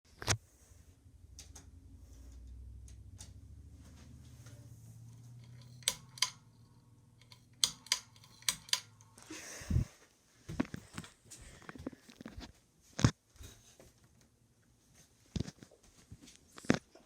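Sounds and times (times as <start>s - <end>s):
ceiling fan motor hum: 0.4s - 11.9s
pull-chain switch clicks: 5.4s - 9.1s.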